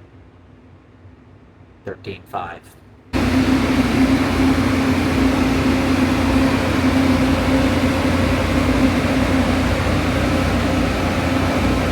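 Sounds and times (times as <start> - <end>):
grain dryer fan rushing: 3.2 - 11.9
low hum: 3.2 - 11.9.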